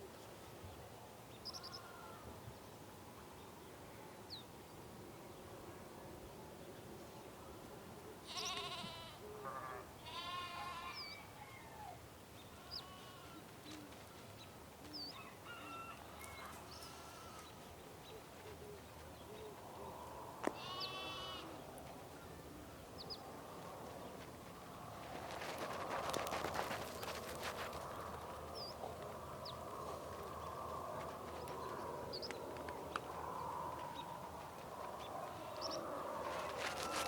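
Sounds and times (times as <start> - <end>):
farm animals bleating: 8.2 - 11.2, 12.6 - 14.3, 16.4 - 17.6, 20.5 - 21.6.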